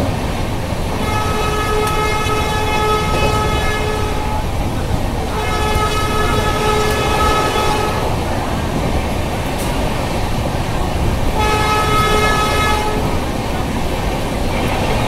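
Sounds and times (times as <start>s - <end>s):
moving train rumble: 0.0s - 15.0s
train horn blasts: 0.8s - 8.5s, 11.2s - 13.5s.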